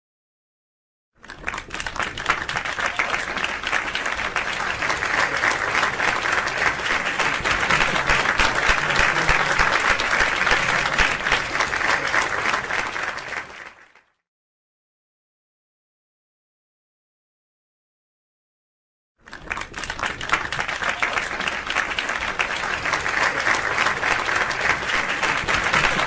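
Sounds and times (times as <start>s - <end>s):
audience applause: 1.2s - 14.1s, 19.2s - 26.0s.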